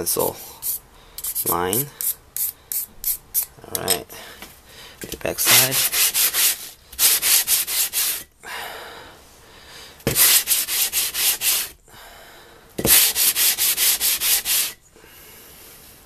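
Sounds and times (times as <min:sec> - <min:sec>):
stone scraping on sandpaper: 0:00.6 - 0:03.2, 0:05.4 - 0:08.3, 0:12.8 - 0:14.8.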